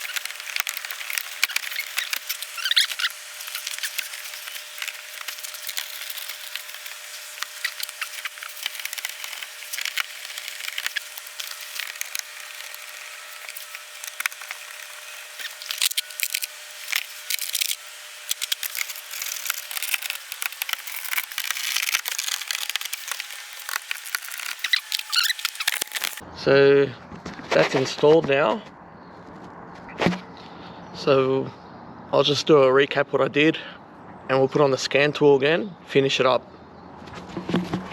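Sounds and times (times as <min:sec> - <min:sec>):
scratchy rubbing and rustling: 0:00.0 - 0:26.2.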